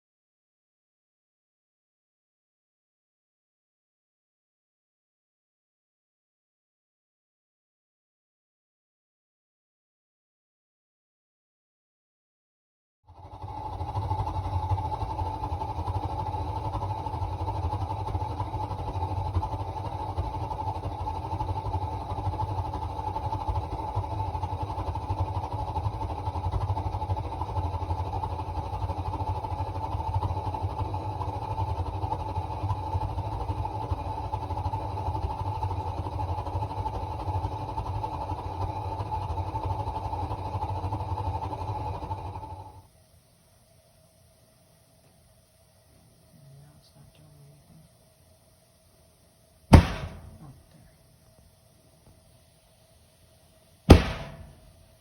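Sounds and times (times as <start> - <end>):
gas burner fluttering rumble: 13.1 - 55.0.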